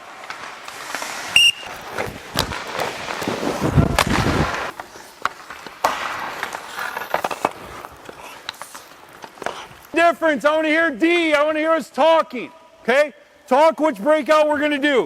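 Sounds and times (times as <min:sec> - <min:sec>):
sharp cracks of sticks and pucks: 0:00.0 - 0:10.0
skate blades scraping ice: 0:00.0 - 0:10.0.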